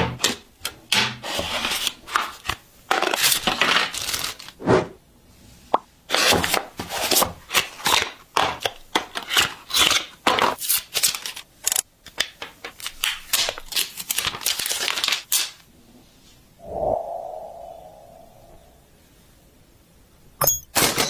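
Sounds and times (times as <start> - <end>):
ringing tone: 20.4 - 20.7.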